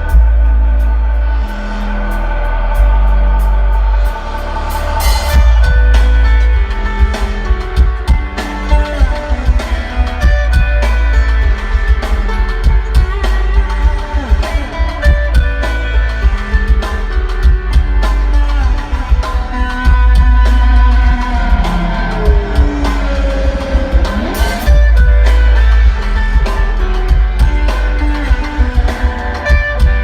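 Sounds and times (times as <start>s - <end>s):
drums: 0.0s - 30.0s
guitar: 0.0s - 30.0s
heavy bass: 0.0s - 30.0s
live band music: 0.0s - 30.0s.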